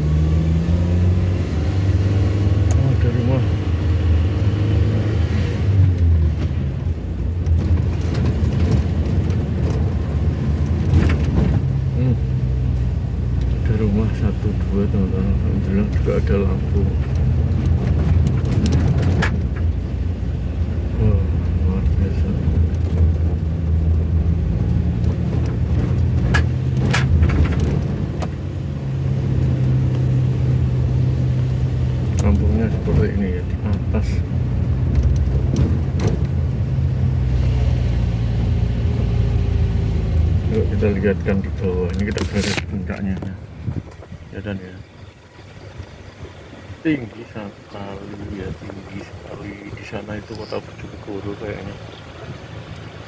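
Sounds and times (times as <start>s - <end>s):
car engine and road noise: 0.0s - 53.0s
knocks and rattles: 7.4s - 11.8s, 17.0s - 19.9s, 25.0s - 28.4s, 34.8s - 36.5s.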